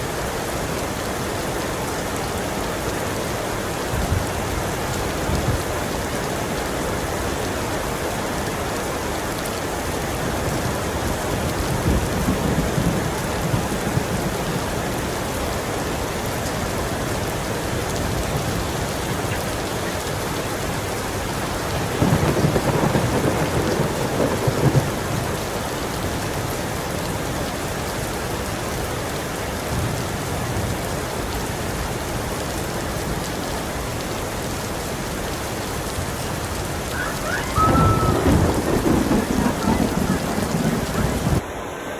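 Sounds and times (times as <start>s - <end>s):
heavy rain: 0.0s - 41.9s
thunder rumbling: 10.1s - 26.5s, 36.8s - 41.4s.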